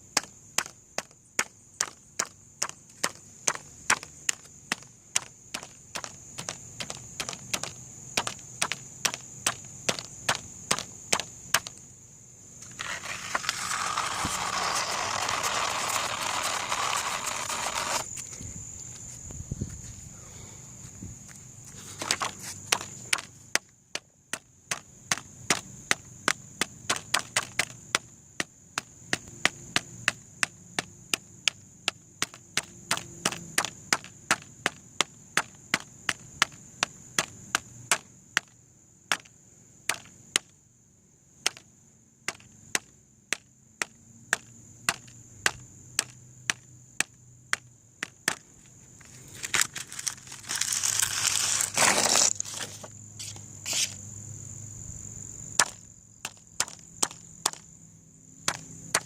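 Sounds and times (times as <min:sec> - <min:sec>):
noisy scraping burst: 0:12.6 - 0:18.2, 0:49.1 - 0:54.0.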